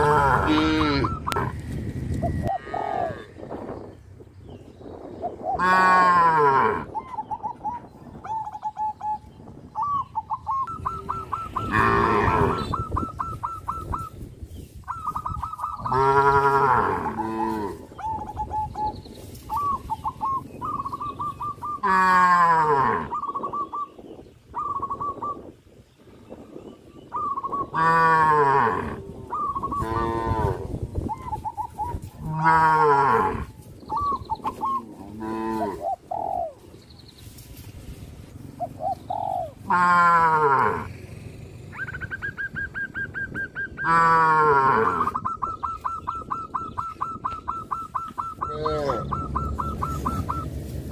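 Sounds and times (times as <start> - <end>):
cows mooing: 0.0 - 1.6, 2.4 - 3.5, 5.6 - 7.0, 10.9 - 12.8, 15.8 - 17.9, 21.8 - 23.1, 27.8 - 29.2, 29.8 - 30.7, 32.2 - 33.5, 34.8 - 35.8, 39.6 - 41.2, 43.8 - 45.2, 48.5 - 50.0
bird calling in high notes: 7.0 - 14.2, 44.9 - 50.5.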